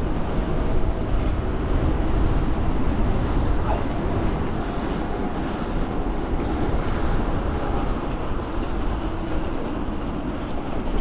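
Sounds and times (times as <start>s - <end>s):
wind buffeting microphone: 0.0s - 11.0s.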